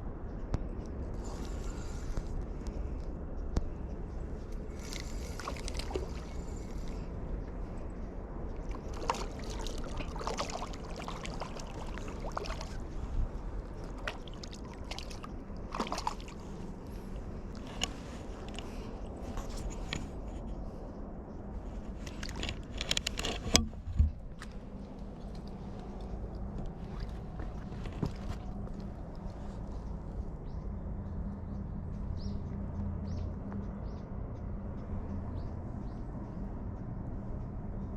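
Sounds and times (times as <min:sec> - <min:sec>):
low outdoor rumble: 0:00.0 - 0:37.9
water sloshing and splashing: 0:04.7 - 0:07.8, 0:08.5 - 0:20.5, 0:21.6 - 0:29.5.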